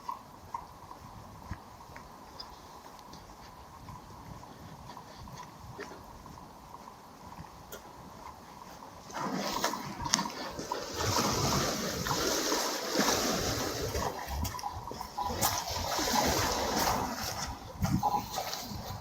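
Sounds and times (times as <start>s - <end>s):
sea waves washing against shore: 9.1s - 19.0s.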